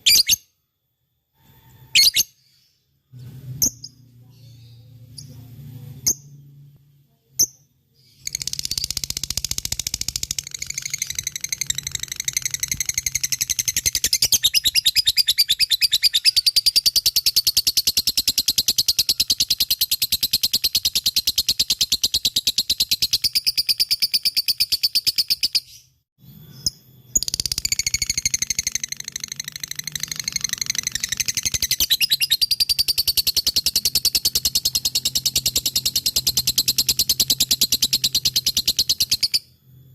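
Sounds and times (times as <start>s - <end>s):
bird chattering trill: 8.1s - 25.8s, 27.2s - 39.4s.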